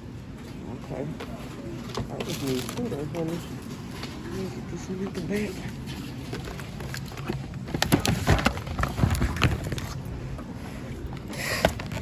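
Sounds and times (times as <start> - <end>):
items knocking and clattering: 1.8 - 10.0
shopping bag rustling: 1.9 - 10.0.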